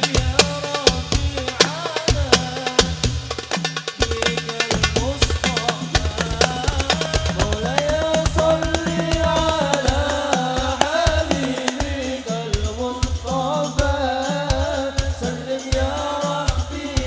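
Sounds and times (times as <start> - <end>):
deep drum beats: 0.0 - 17.0
hand drum percussion: 0.0 - 17.0
wavering vocal melody: 5.0 - 17.0.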